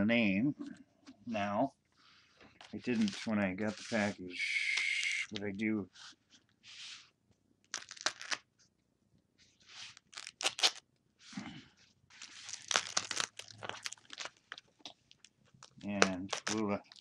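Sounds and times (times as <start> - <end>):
mail packaging crackling: 7.7 - 8.4, 12.2 - 14.6, 15.2 - 17.0.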